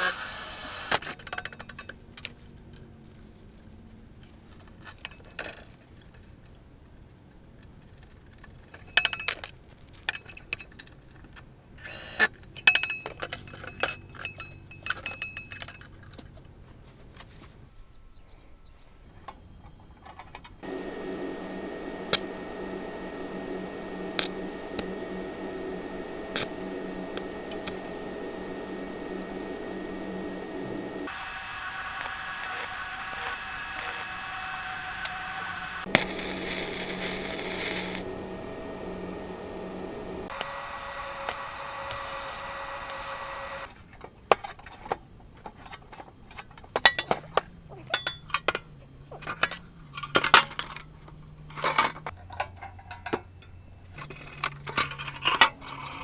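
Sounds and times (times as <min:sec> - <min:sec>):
metal parts clinking: 0:00.0 - 0:17.7, 0:19.1 - 0:20.6, 0:41.3 - 0:56.0
mechanical hum: 0:00.0 - 0:56.0
clicks: 0:40.3 - 0:56.0.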